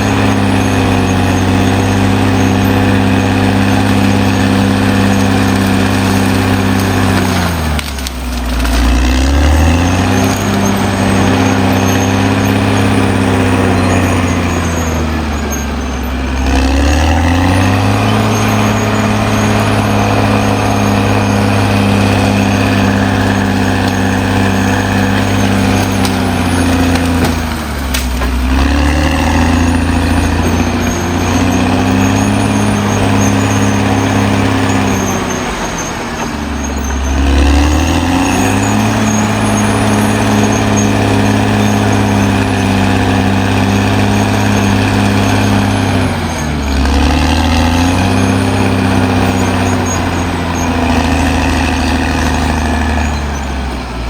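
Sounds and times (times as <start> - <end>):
bulldozer diesel engine lugging: 0.0 - 54.0.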